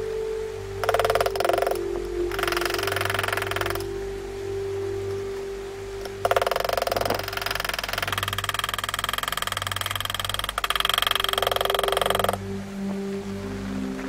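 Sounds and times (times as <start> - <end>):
engraving tool pulsing on steel: 0.8 - 3.9, 6.0 - 12.4.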